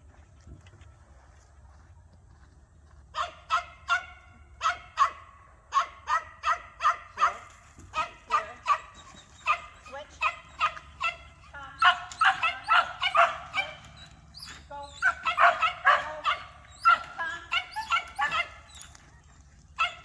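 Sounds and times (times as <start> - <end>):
dog barking high-pitched: 3.2 - 7.4, 8.0 - 18.8.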